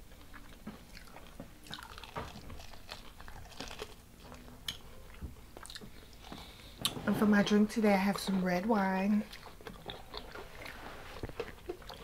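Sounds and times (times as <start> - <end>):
chewing crunchy food: 0.0 - 7.0, 9.2 - 12.0
wet mouth sounds: 9.3 - 12.0.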